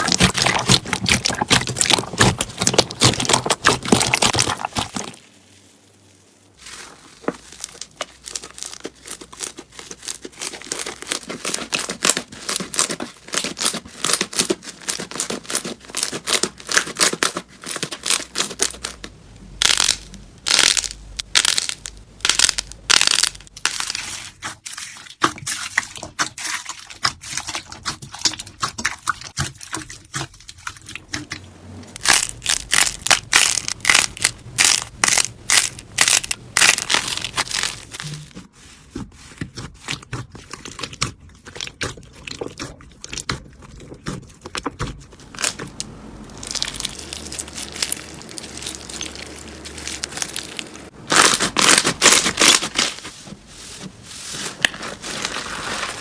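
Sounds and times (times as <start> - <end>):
slime squeezed crackling and popping: 0.0 - 5.7, 7.2 - 24.3, 32.0 - 38.3, 40.0 - 53.0.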